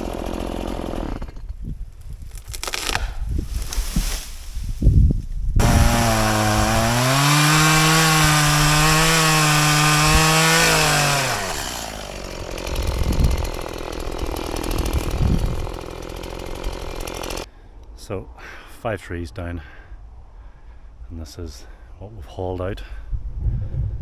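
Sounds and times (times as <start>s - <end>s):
chainsaw revving: 0.0s - 1.6s, 5.6s - 17.5s
low thumps: 4.8s - 17.4s.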